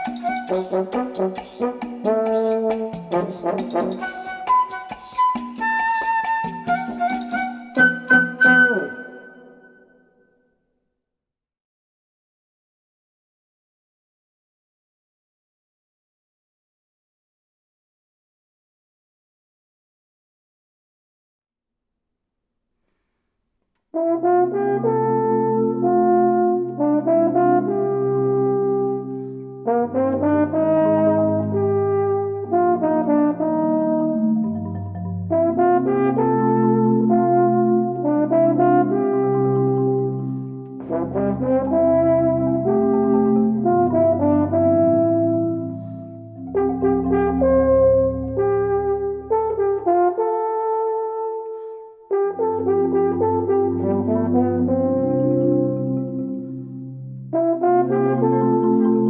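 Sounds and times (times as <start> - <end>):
french horn playing: 0.0 - 4.6, 24.0 - 34.6, 35.2 - 51.5, 52.1 - 56.1, 57.3 - 59.0
marimba: 0.0 - 9.4, 33.6 - 49.4, 52.8 - 59.0.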